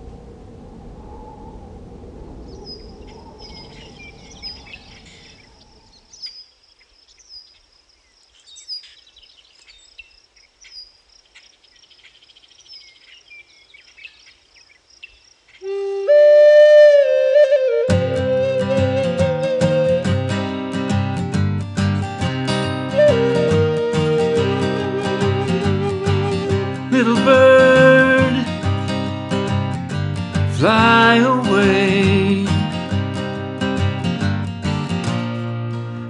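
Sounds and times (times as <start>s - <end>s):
low rumbling noise: 0.0s - 5.9s
bird chirping: 2.5s - 15.8s
flute playing: 15.6s - 21.1s, 22.5s - 28.5s.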